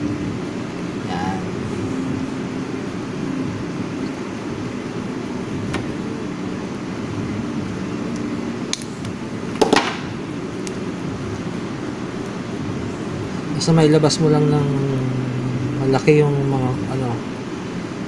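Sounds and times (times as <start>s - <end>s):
steady low hum: 0.0s - 18.0s
sharp snap: 8.1s - 8.9s.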